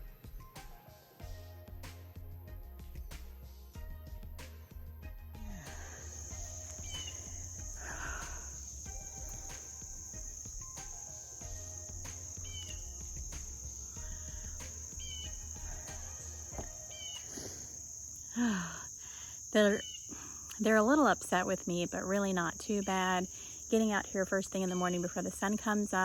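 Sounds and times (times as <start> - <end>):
crickets chirping: 5.4 - 26.0
bird chirps: 5.5 - 20.6.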